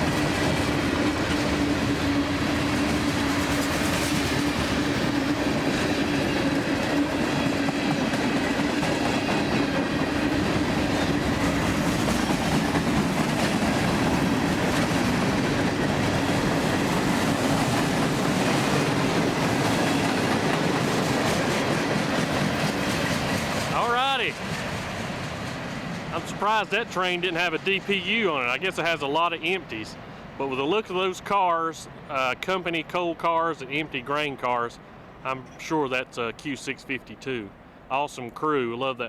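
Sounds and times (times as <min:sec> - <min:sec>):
clickety-clack over rail joints: 0:00.0 - 0:29.7
train wheels rumbling on rail: 0:00.0 - 0:34.2.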